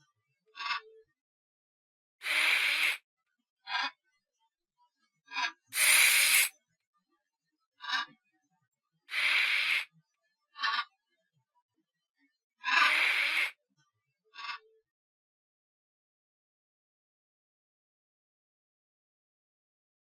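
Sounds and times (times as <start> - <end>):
tarantula hissing: 2.2 - 3.0, 5.8 - 6.5, 9.1 - 9.9, 12.8 - 13.5.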